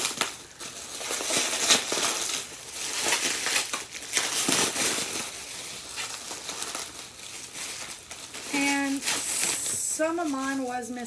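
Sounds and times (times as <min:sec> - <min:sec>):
packaging rustling and crunching: 0:00.0 - 0:11.0.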